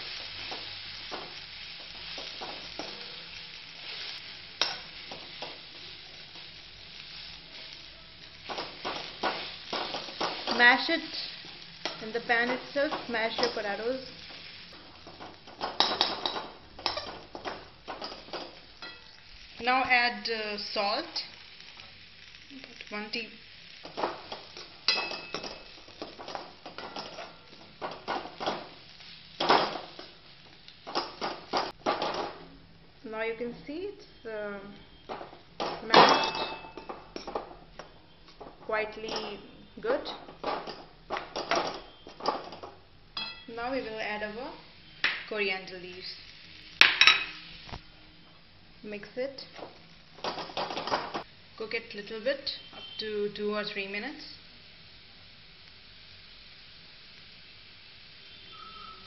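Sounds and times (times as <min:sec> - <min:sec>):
oil sizzling: 0:00.0 - 0:59.0.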